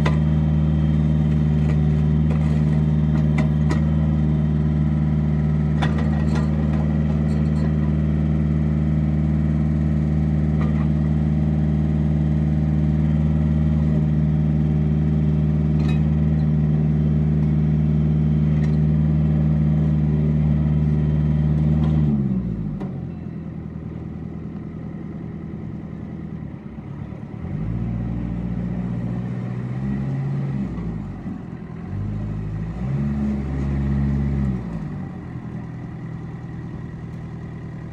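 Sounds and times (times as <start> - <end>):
tractor diesel engine: 0.0 - 37.9.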